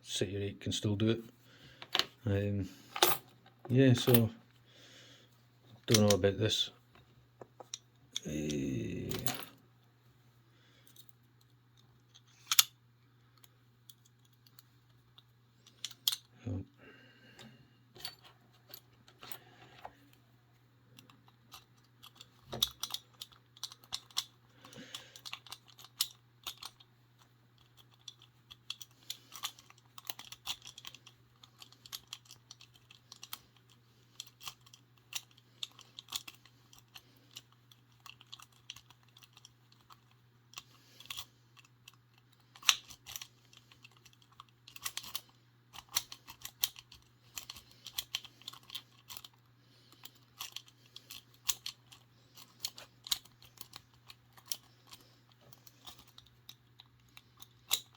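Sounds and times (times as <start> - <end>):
faint low hum: 0.0 - 57.9
lock picks clicking and scraping: 10.8 - 16.3, 17.4 - 20.2, 20.9 - 57.9.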